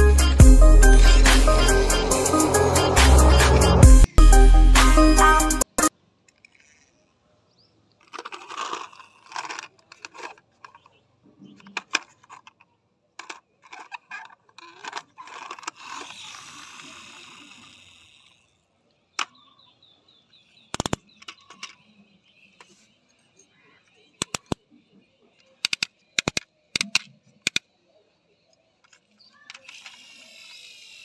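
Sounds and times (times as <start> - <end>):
sharp clicks: 20.7 - 21.8, 24.2 - 24.6, 25.4 - 27.7.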